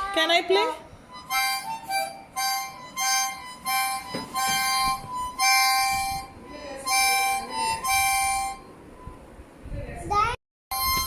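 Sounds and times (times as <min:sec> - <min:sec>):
harmonica chords: 0:01.0 - 0:09.0, 0:10.7 - 0:11.0.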